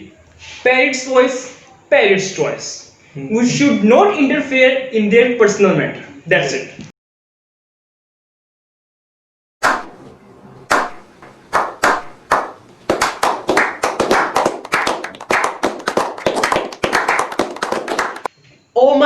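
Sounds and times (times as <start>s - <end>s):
hands clapping: 9.6s - 18.3s.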